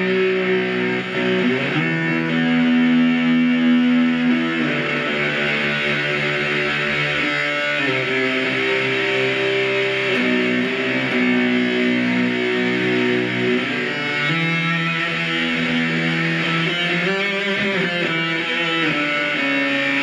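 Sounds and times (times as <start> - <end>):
fuzzed electric guitar notes: 0.0 - 20.0.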